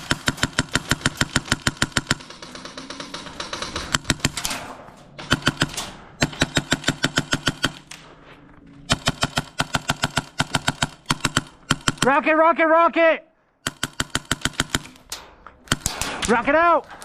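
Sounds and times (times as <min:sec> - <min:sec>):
airsoft guns firing bursts: 0:00.0 - 0:04.6, 0:05.2 - 0:07.8, 0:08.9 - 0:12.3, 0:13.6 - 0:14.9
faint rattle of gunfire: 0:00.0 - 0:07.8.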